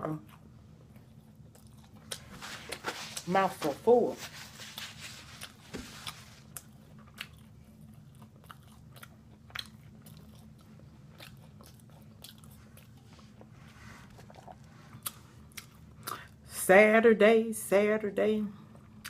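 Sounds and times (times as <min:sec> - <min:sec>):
person chewing crunchy food: 0:00.2 - 0:03.3, 0:04.6 - 0:16.4.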